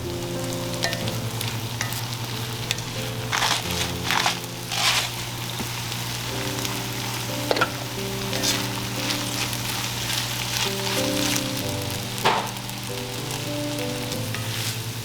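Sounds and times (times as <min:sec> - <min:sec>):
food sizzling in a pan: 0:00.0 - 0:15.0
soft background music: 0:00.0 - 0:15.0
utensil scraping: 0:02.7 - 0:05.8, 0:08.3 - 0:11.4.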